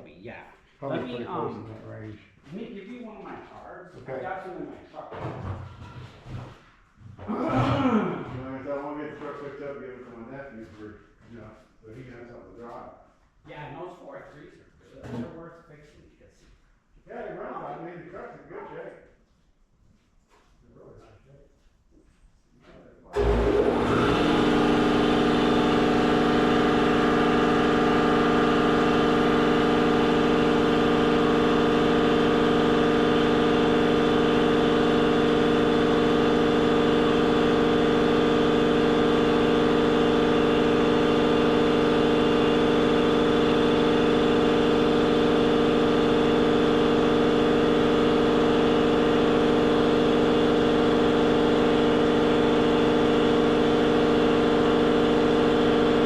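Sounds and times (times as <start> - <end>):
engine idling: 23.2 - 56.0.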